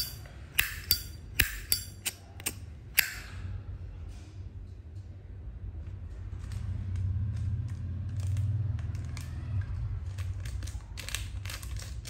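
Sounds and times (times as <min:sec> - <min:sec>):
lighter clicking: 0:00.0 - 0:03.4.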